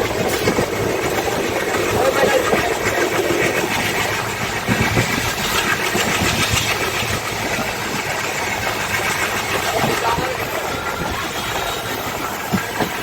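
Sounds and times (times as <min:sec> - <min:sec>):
diesel locomotive engine running: 0:00.0 - 0:13.0.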